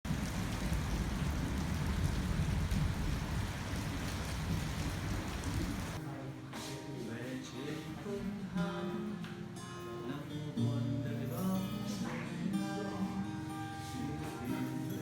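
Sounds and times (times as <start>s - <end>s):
acoustic guitar tune: 6.0s - 15.0s.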